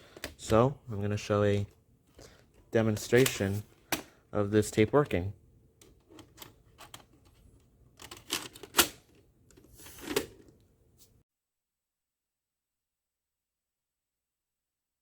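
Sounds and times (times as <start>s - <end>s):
plastic cassette clicks and clunks: 5.8s - 10.5s.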